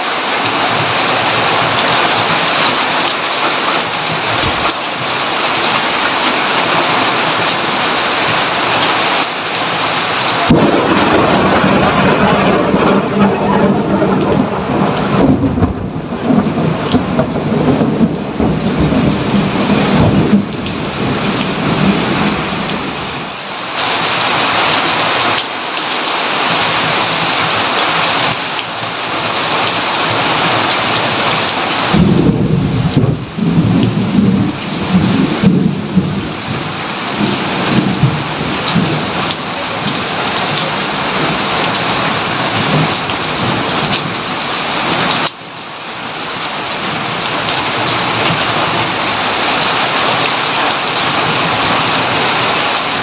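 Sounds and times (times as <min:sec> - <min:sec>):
heavy rain: 0:00.0 - 0:53.0
thunder rumbling: 0:09.7 - 0:23.4, 0:29.3 - 0:45.2.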